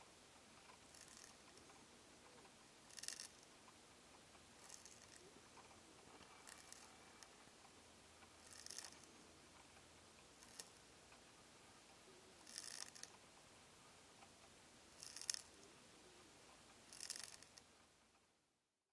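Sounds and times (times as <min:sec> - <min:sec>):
snail scraping a leaf: 0:00.8 - 0:01.6, 0:02.9 - 0:03.4, 0:04.6 - 0:05.2, 0:06.2 - 0:07.3, 0:08.4 - 0:09.1, 0:10.4 - 0:10.8, 0:12.4 - 0:13.2, 0:14.9 - 0:15.6, 0:16.8 - 0:17.6.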